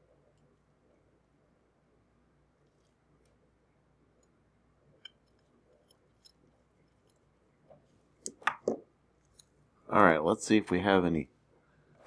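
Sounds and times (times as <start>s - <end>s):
faint clicks of small parts: 5.0s - 9.6s.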